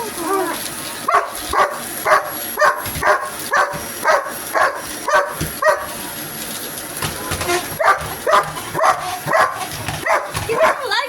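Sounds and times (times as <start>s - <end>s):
dog barking: 1.0s - 6.0s, 7.7s - 11.0s.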